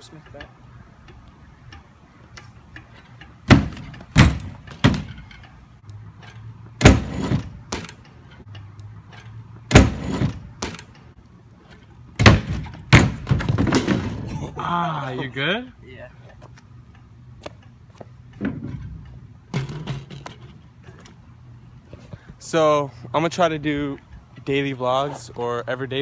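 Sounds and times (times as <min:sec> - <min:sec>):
bmx bikes banging on landing: 0:03.4 - 0:05.5, 0:06.2 - 0:08.0, 0:09.1 - 0:10.9, 0:12.2 - 0:14.5, 0:18.4 - 0:20.6.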